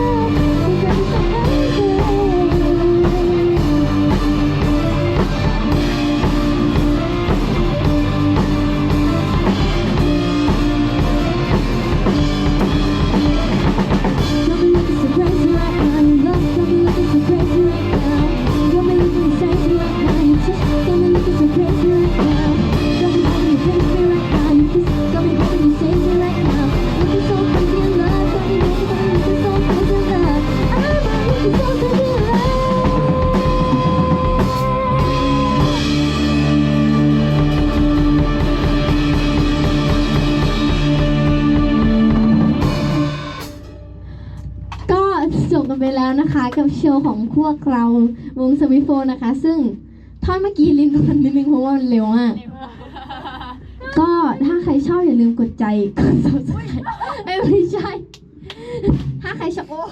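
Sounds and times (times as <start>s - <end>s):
person singing: 0.0s - 7.9s, 13.1s - 43.0s
live rock band playing: 0.0s - 45.5s.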